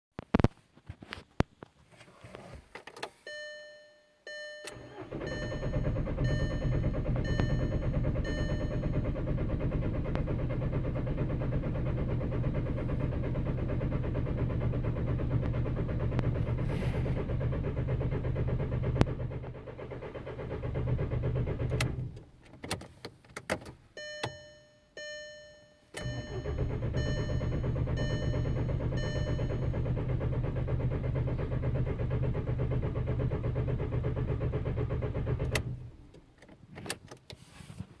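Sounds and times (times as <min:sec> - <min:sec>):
diesel engine cranking on starter: 0:04.6 - 0:22.2, 0:26.0 - 0:36.2.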